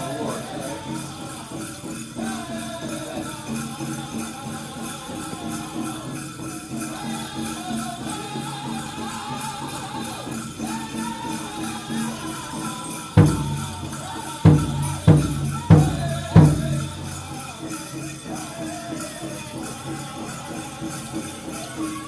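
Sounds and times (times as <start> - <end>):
bells jingling: 0.0 - 22.0
drum group singing: 0.0 - 22.0
loud drum strikes: 13.2 - 17.4.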